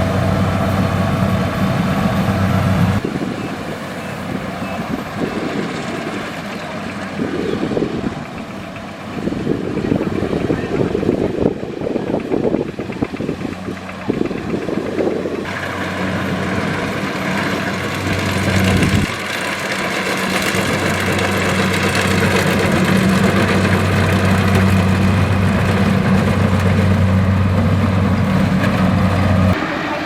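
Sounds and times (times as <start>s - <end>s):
combine harvester diesel drone: 0.0s - 30.0s.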